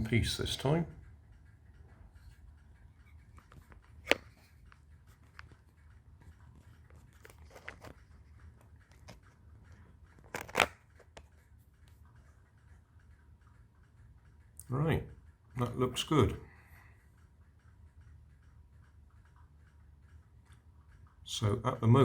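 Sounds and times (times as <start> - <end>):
sharp plastic clacks: 2.2 - 13.5
small plastic clicks and rubbing: 3.0 - 12.3.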